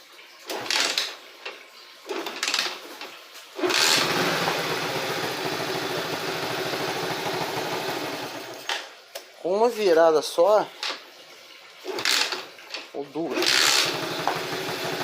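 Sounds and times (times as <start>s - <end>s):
motorcycle kick-start strokes: 0.5s - 1.1s, 3.6s - 8.9s, 11.8s - 12.5s, 13.3s - 15.0s
motorcycle engine running: 3.6s - 8.5s, 13.6s - 15.0s.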